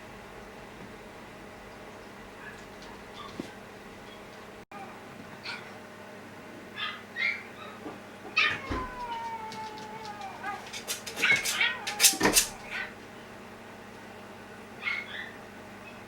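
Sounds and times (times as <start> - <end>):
dogs yelping: 2.4 - 3.5, 4.8 - 5.8, 6.7 - 13.0, 14.8 - 15.4
dogs whining: 6.7 - 13.0, 14.8 - 16.0
dog howling: 6.8 - 12.9.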